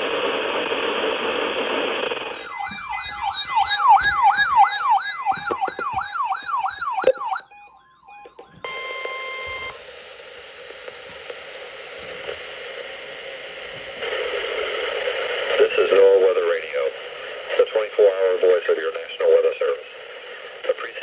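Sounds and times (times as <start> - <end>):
radio hiss: 0.0 - 7.4, 8.2 - 21.0
electronic yelp siren: 2.2 - 11.2
steady high beep: 2.3 - 9.8.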